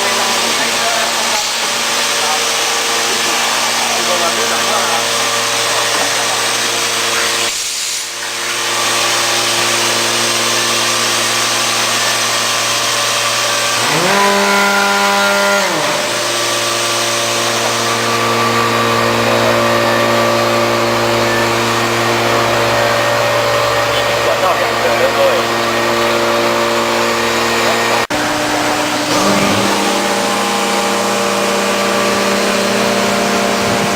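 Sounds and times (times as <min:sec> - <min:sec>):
wood cutting noise: 0:00.0 - 0:33.9
wood router whine and hum: 0:00.0 - 0:33.9
rising and falling tone: 0:28.9 - 0:33.9.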